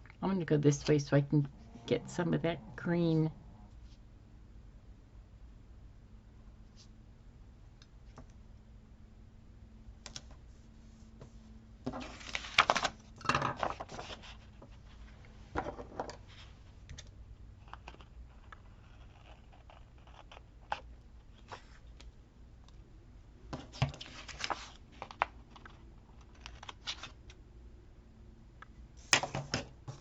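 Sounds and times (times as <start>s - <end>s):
paper crinkling rustle: 12.0s - 15.0s, 23.9s - 27.2s.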